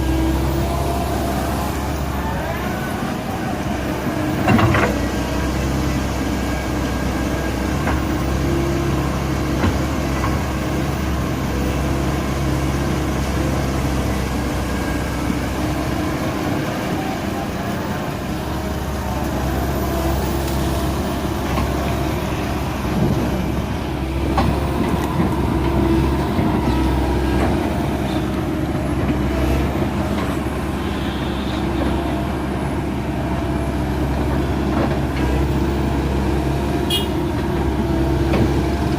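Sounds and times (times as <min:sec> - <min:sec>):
heavy diesel excavator engine: 0:00.0 - 0:38.9.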